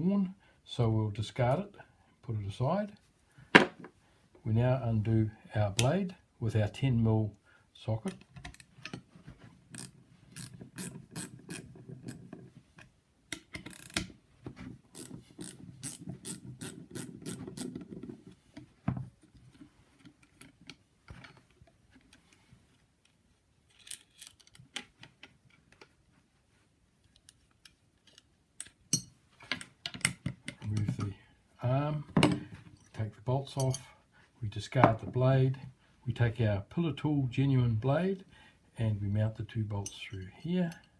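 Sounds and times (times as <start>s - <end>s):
tool handling clicks and knocks: 8.0s - 26.2s, 27.0s - 31.2s, 32.0s - 33.0s.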